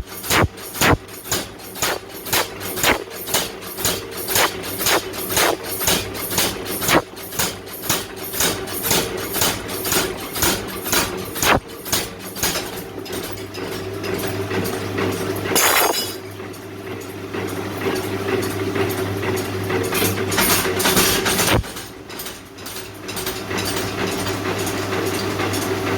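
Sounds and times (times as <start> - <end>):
machine drive humming: 0.0 - 1.0, 1.8 - 3.1, 4.3 - 5.7, 11.4 - 11.6
power hammer striking hot iron: 0.0 - 12.6, 15.6 - 16.2
loud hiss-like burst: 1.8 - 3.0, 15.6 - 16.0.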